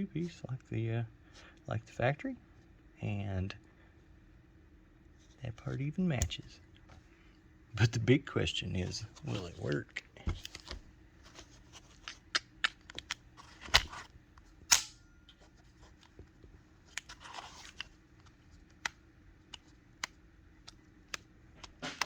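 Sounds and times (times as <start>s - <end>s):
sharp clicks and snaps of plastic: 11.9s - 15.0s, 16.9s - 22.0s.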